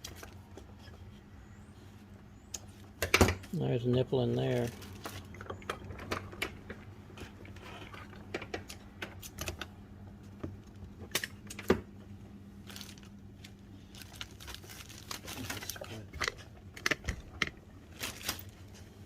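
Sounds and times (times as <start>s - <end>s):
steady low hum: 0.0s - 19.0s
hands and tools clicking and knocking: 16.1s - 17.6s.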